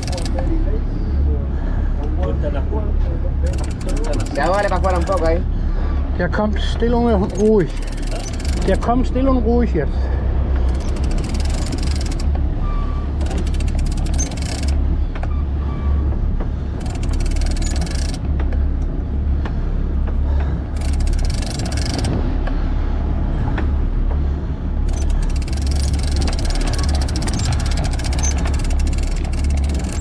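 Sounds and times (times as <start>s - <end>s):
boat engine droning: 0.0s - 1.8s, 2.4s - 30.0s.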